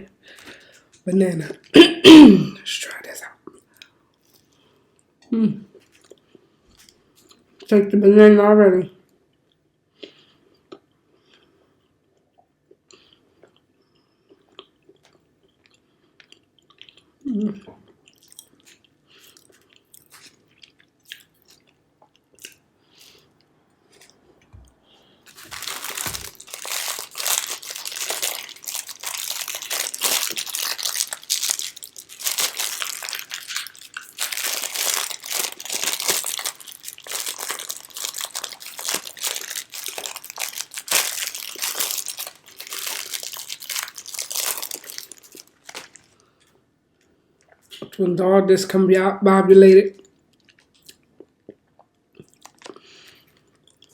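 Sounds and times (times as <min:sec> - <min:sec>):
plastic wrapper crinkling and tearing: 0:19.4 - 0:20.5, 0:25.2 - 0:46.5.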